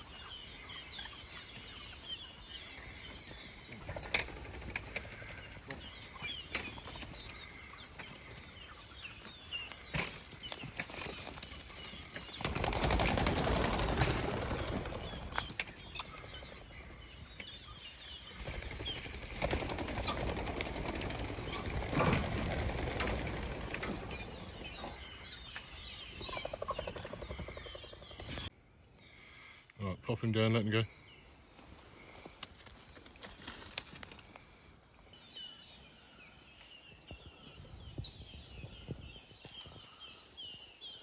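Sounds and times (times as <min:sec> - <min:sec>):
birds flapping wings: 0:03.8 - 0:05.8, 0:09.9 - 0:16.7, 0:18.3 - 0:25.0.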